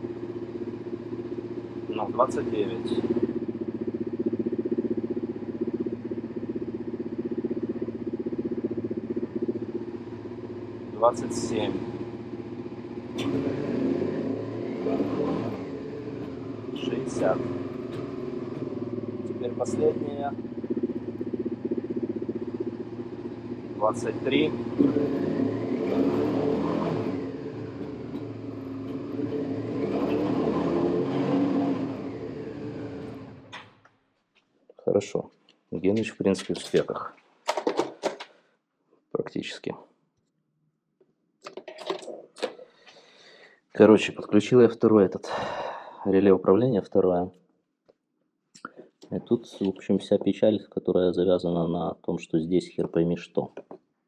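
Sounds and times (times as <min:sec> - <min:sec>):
motorcycle engine idling: 0:00.0 - 0:33.9.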